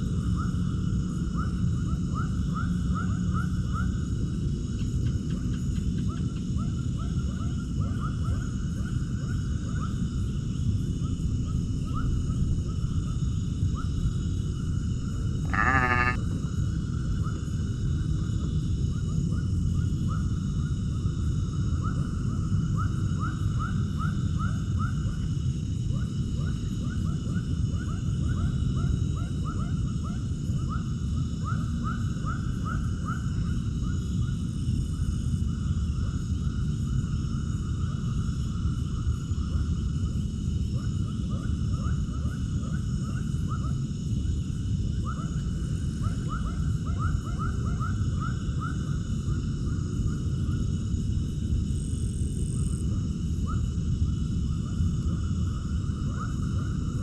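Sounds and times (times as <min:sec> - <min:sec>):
farm animal bleating: 0:15.5 - 0:16.2.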